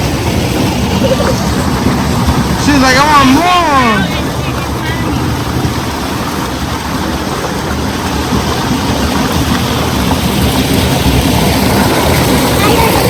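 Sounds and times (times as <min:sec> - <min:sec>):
waterfall rushing and splashing: 0:00.0 - 0:13.0.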